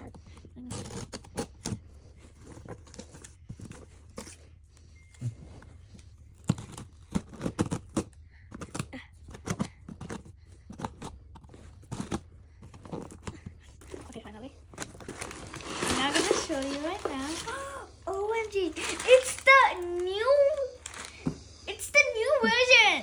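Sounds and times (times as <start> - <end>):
package being torn open: 14.8 - 21.3.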